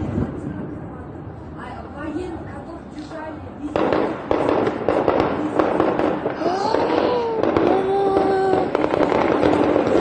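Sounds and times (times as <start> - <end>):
rapid gunfire: 3.8 - 10.0.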